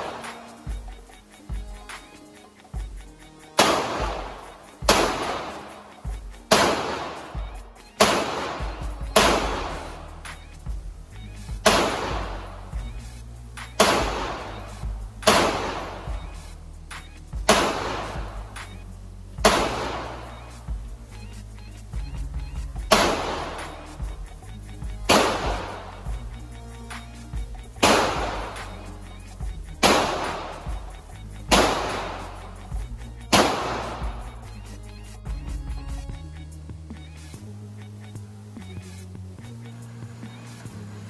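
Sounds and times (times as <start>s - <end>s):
handgun shots indoors: 3.6s - 7.4s, 8.0s - 10.4s, 11.6s - 12.6s, 13.8s - 16.4s, 17.5s - 18.4s, 19.4s - 20.6s, 22.9s - 24.0s, 25.1s - 26.0s, 27.8s - 28.8s, 29.8s - 30.8s, 31.5s - 32.7s, 33.3s - 34.3s.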